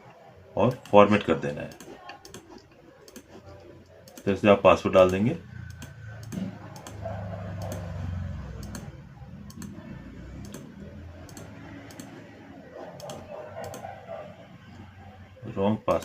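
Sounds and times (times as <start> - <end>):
light clicking: 8.6 - 8.9, 10.4 - 12.2.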